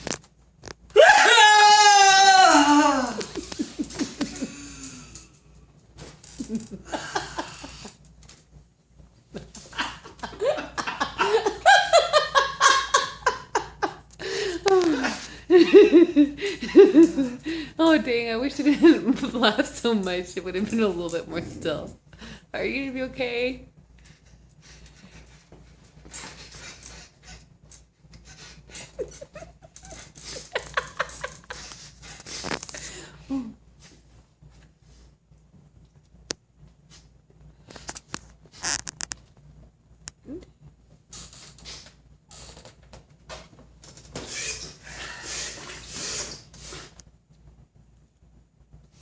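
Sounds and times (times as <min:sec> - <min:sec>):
hearty laughter: 0:03.2 - 0:04.9, 0:06.3 - 0:08.0, 0:09.4 - 0:17.4, 0:28.2 - 0:31.9
man breathing hard: 0:14.2 - 0:15.4.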